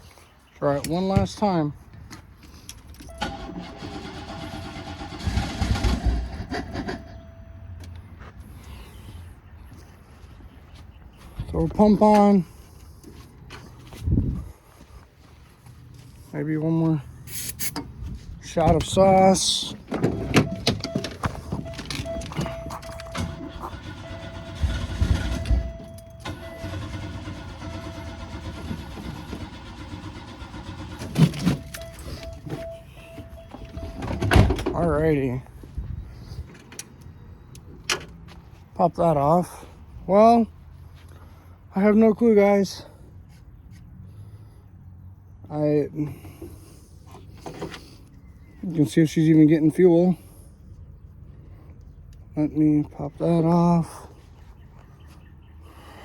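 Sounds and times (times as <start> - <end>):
starter motor cranking engine: 3.1 - 7.1, 21.5 - 32.8
engine sputtering: 3.1 - 7.5, 17.4 - 35.2.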